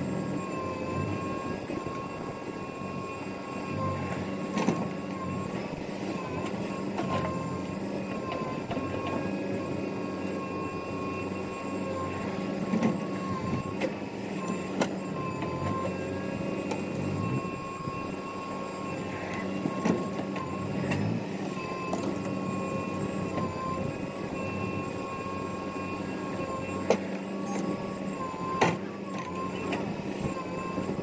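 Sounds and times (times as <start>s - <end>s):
heavy diesel machinery running: 0.0s - 31.0s.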